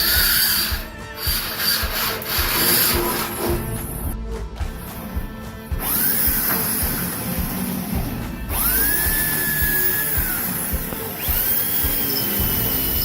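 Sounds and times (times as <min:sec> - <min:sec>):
power drill spinning up: 0:00.0 - 0:03.9, 0:05.8 - 0:13.0
music: 0:00.0 - 0:13.0.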